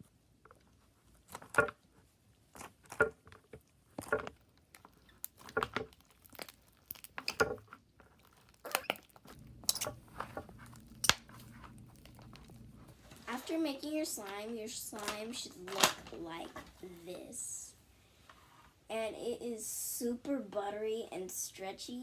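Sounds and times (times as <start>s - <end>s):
slime squishing and popping: 2.6s - 12.9s.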